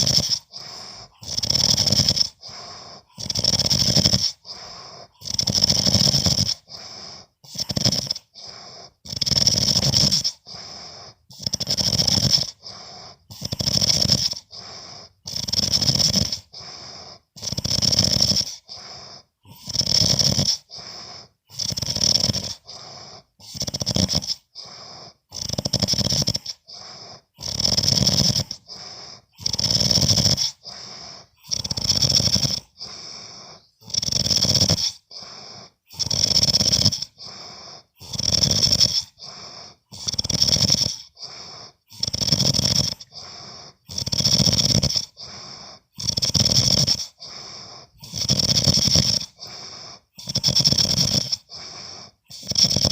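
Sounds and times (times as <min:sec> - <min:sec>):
person snoring: 0:00.0 - 0:52.9
soft breath sound: 0:00.0 - 0:52.9.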